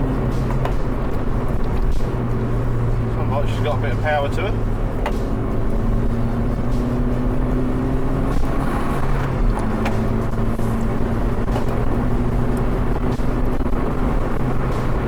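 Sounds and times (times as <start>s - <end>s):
car engine and exhaust drone: 0.0s - 15.0s
light knocks from the road: 5.0s - 5.3s.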